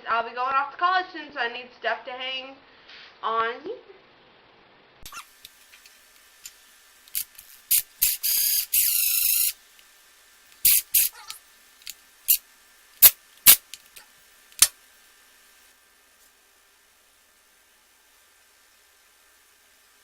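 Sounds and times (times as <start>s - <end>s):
spray-like hisses: 5.1s - 14.8s.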